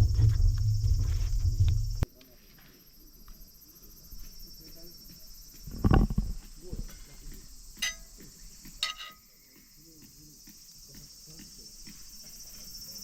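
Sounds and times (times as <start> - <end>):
insects chirping: 0.0 - 13.0
metallic clinks: 7.8 - 8.2, 8.8 - 9.3.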